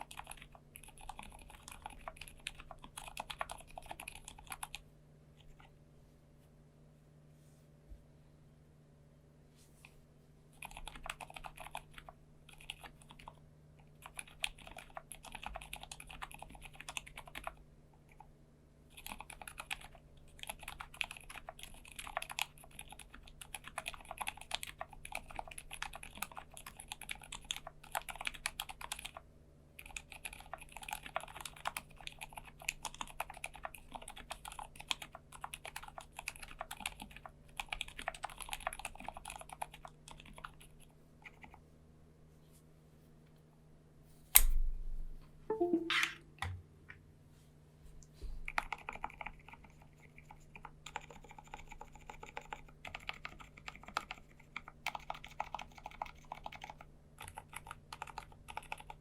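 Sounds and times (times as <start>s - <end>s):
soft mechanical keyboard typing: 0.0s - 5.8s, 10.5s - 18.3s, 18.9s - 41.6s, 48.5s - 59.0s
low electrical hum: 0.0s - 59.0s.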